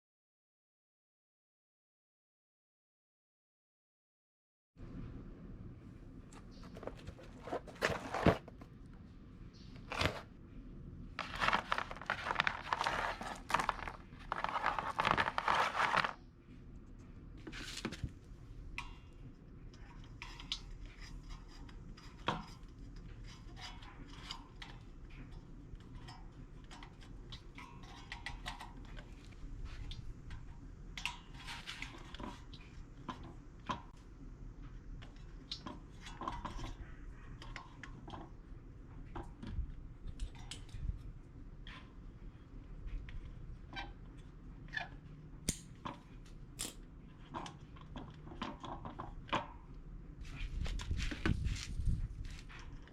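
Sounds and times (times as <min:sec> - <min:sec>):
rustling: 0:06.4 - 0:08.8, 0:09.7 - 0:10.3, 0:11.2 - 0:16.2, 0:50.2 - 0:52.8
packaging crinkling and tearing: 0:11.2 - 0:16.2.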